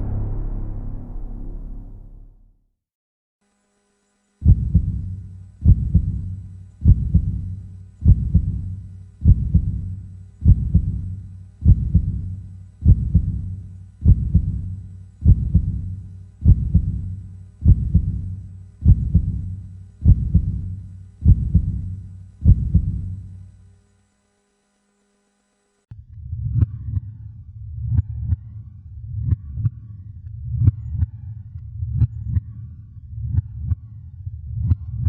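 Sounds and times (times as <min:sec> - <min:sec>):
steady low hum: 0:00.0 - 0:02.3, 0:04.4 - 0:23.9
heartbeat thumps: 0:04.4 - 0:23.2.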